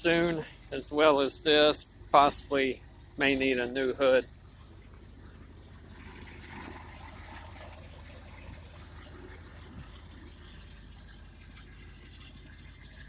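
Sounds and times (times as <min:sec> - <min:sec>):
faint hiss: 0:00.0 - 0:04.2
engine idling: 0:00.0 - 0:13.0.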